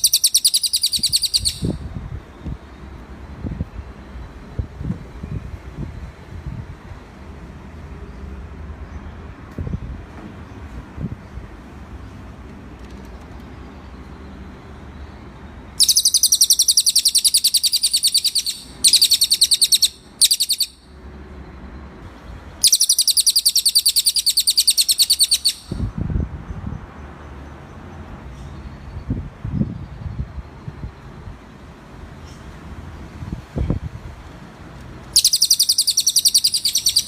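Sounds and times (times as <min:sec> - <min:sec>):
bird singing fast trill: 0:00.0 - 0:01.8, 0:15.8 - 0:20.9, 0:22.6 - 0:25.8, 0:35.2 - 0:37.0.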